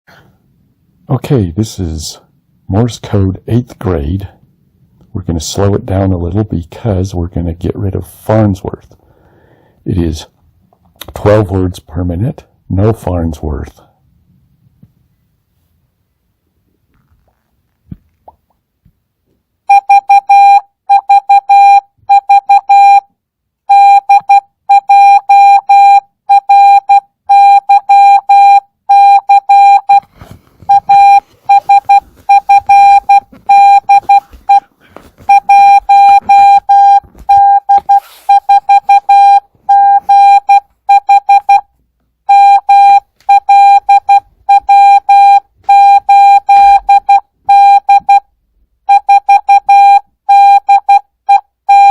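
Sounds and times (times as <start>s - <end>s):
morse code beeps: 19.7s - 23.1s, 23.7s - 30.1s, 30.7s - 34.7s, 35.3s - 41.7s, 42.3s - 48.3s, 48.9s - 51.9s.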